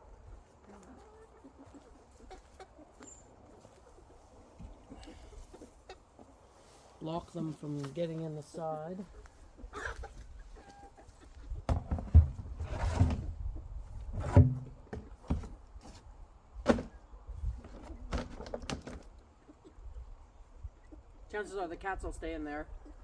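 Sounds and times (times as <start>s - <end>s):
chickens clucking: 0.0s - 23.0s
knocks and thumps: 11.6s - 13.3s, 14.2s - 15.6s, 16.7s - 17.0s.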